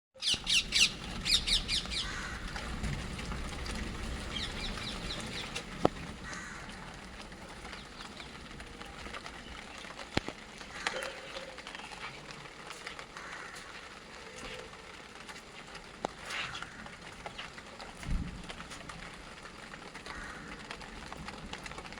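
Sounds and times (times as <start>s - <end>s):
parrots squawking: 0.2s - 2.5s
rain hissing: 0.2s - 21.9s.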